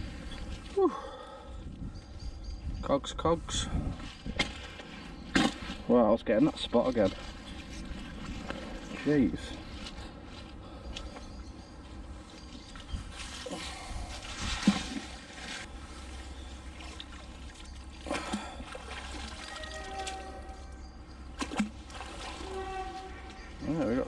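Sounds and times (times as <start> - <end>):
water trickling and splashing: 13.2 - 24.0.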